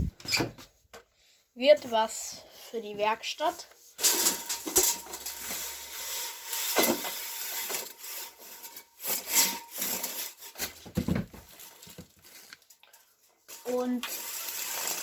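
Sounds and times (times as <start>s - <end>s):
wood scraping and knocking: 10.7s - 12.2s.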